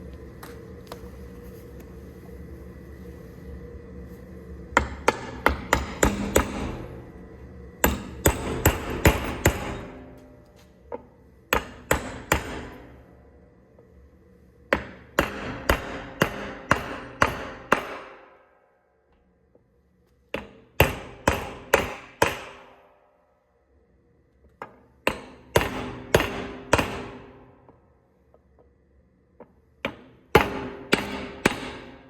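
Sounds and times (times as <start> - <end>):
steady low hum: 0.0 - 32.0
hammer striking metal: 4.8 - 6.9, 7.8 - 10.4, 11.5 - 12.9, 14.8 - 18.4, 20.4 - 22.8, 25.1 - 27.4, 29.9 - 32.0.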